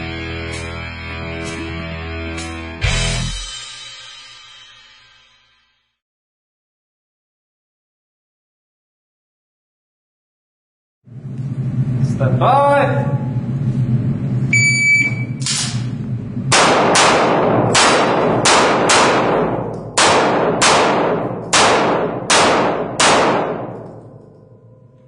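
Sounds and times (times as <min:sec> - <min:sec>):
shot timer beep: 0:14.5 - 0:15.4
pistol shots echoing: 0:16.5 - 0:24.2.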